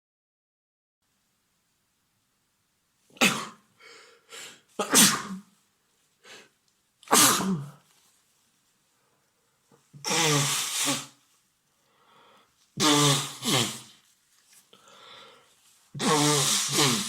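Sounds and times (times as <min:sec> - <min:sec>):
man sneezing: 0:03.1 - 0:03.7, 0:04.5 - 0:05.5, 0:07.0 - 0:07.8, 0:10.0 - 0:11.2, 0:12.8 - 0:14.0, 0:16.0 - 0:17.0
short breaths: 0:03.8 - 0:04.7, 0:06.2 - 0:06.6, 0:11.8 - 0:14.0, 0:14.7 - 0:17.0.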